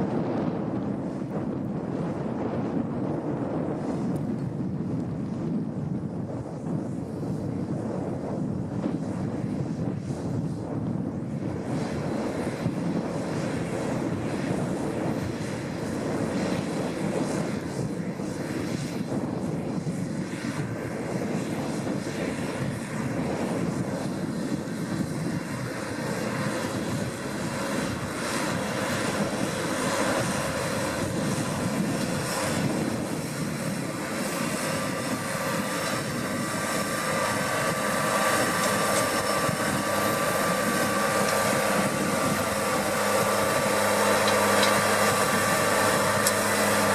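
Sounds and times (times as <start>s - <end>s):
tractor diesel engine under load: 20.6s - 46.9s.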